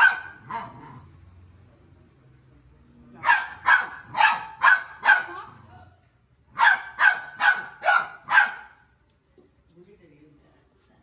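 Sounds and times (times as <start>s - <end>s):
puppy barking: 0.0s - 1.1s, 3.2s - 5.5s, 6.5s - 8.9s.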